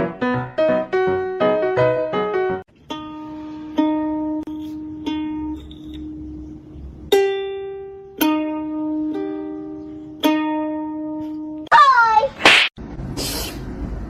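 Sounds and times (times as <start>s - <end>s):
slow plucked string notes: 2.7s - 11.7s.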